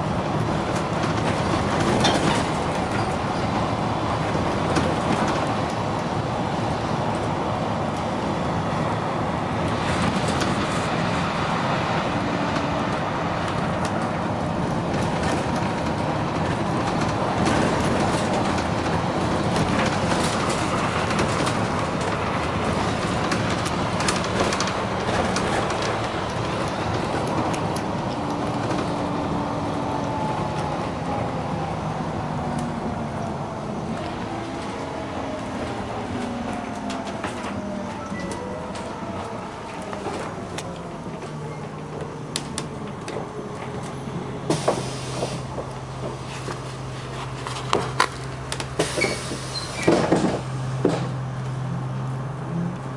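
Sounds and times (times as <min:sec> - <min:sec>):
bus body rattles: 0:00.0 - 0:06.3, 0:12.5 - 0:29.7, 0:38.6 - 0:51.2
bus engine running: 0:00.0 - 0:52.9.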